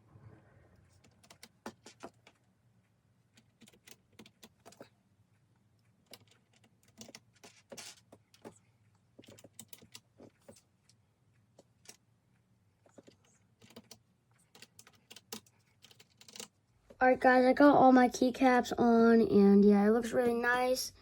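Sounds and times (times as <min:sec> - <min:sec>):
low steady hum: 0:00.0 - 0:01.3.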